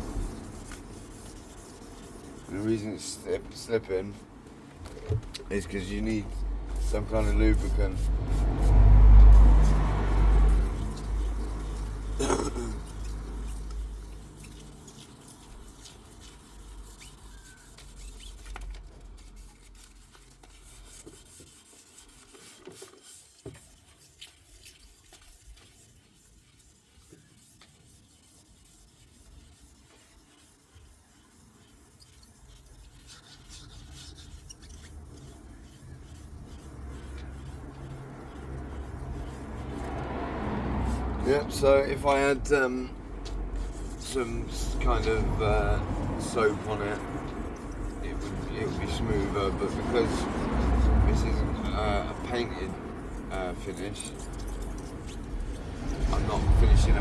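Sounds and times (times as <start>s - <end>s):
sandpaper rubbing: 0.0s - 57.0s
low rumble: 54.6s - 57.0s.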